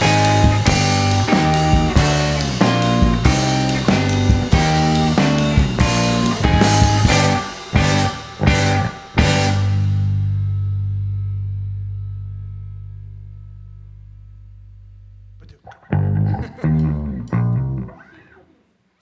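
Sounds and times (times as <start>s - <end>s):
rock band playing: 0.0s - 12.6s.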